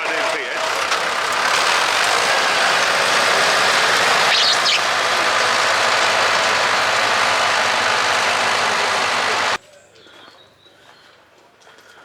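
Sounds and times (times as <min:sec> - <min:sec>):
machinery engine running: 0:00.0 - 0:09.6.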